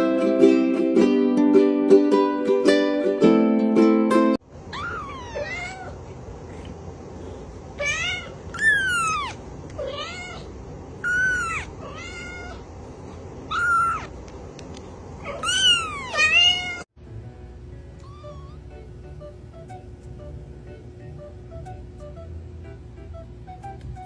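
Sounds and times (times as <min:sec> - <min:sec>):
kitten meowing: 0:04.7 - 0:06.0, 0:07.8 - 0:12.6, 0:13.5 - 0:14.1, 0:15.2 - 0:16.9, 0:18.0 - 0:18.6.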